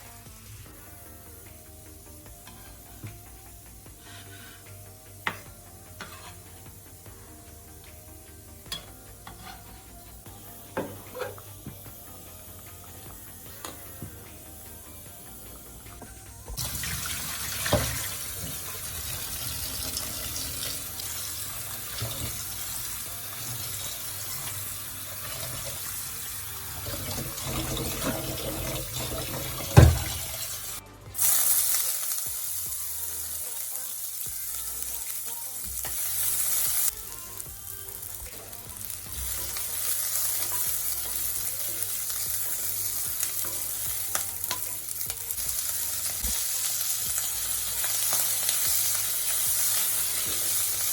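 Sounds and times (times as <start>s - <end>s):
food sizzling in frying pan: 0.0s - 50.9s.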